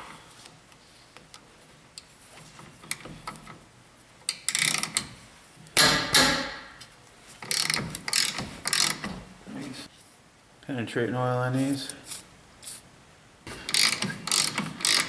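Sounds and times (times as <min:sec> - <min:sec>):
ratchet wrench clicking: 0:04.3 - 0:05.1, 0:07.4 - 0:09.0, 0:13.7 - 0:15.0.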